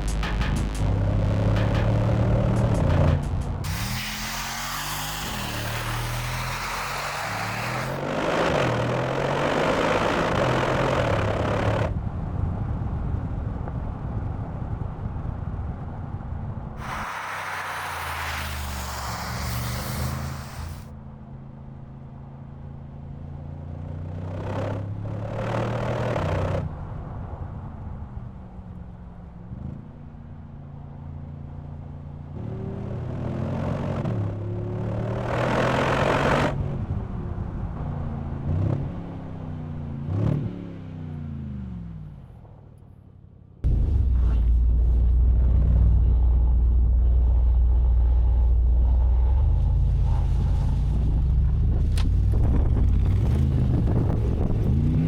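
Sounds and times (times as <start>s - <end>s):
car engine revving hard: 0.8s - 11.9s, 16.8s - 20.9s, 32.4s - 36.6s.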